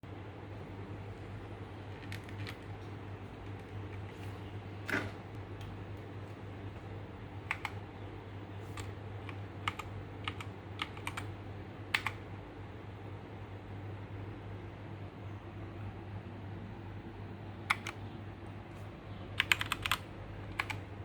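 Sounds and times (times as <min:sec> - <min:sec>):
mechanical keyboard keystrokes: 0:01.9 - 0:02.8, 0:07.4 - 0:07.8, 0:08.8 - 0:11.3, 0:11.9 - 0:12.2, 0:17.7 - 0:18.0, 0:19.4 - 0:20.8.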